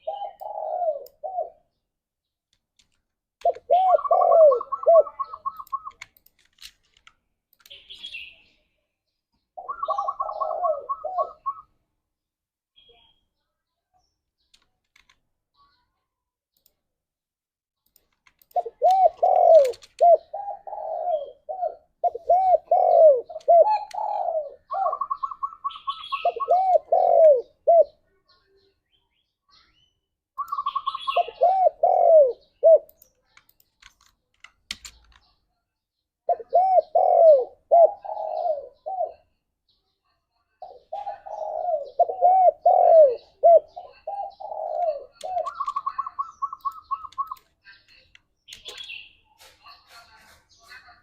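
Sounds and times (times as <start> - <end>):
dove cooing: 0.0 - 1.7, 3.4 - 6.0, 9.6 - 11.7, 18.6 - 28.0, 30.4 - 32.9, 36.3 - 39.3, 40.6 - 47.4.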